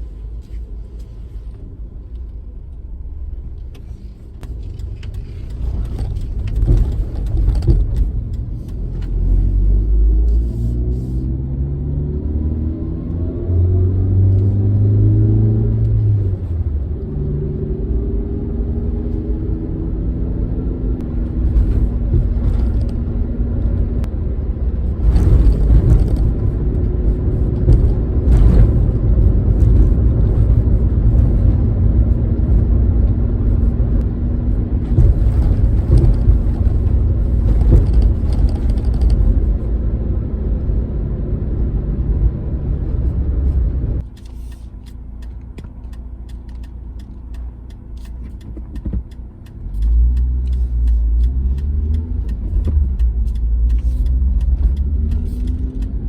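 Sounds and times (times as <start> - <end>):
car engine running: 0.0 - 11.3, 14.3 - 56.0
low road rumble: 0.0 - 56.0.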